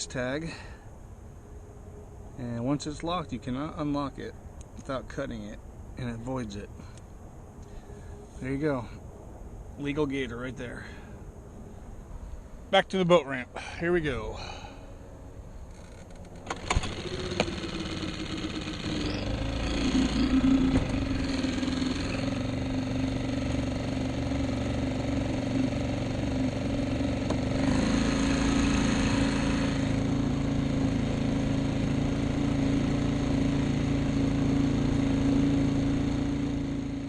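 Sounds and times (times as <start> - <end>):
boat motor running: 16.0 - 37.0.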